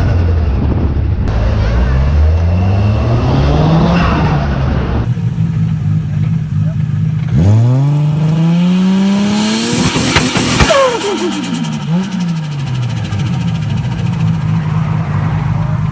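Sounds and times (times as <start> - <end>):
car engine revving: 0.0 - 15.9
car engine idling: 5.0 - 15.9.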